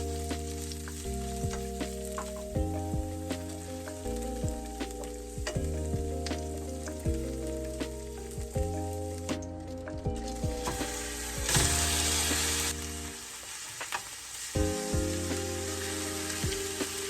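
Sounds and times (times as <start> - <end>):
background music: 0.0 - 13.6, 14.6 - 17.0
frying pops: 0.2 - 2.6, 10.2 - 17.0
food sizzling in a pan: 10.7 - 17.0.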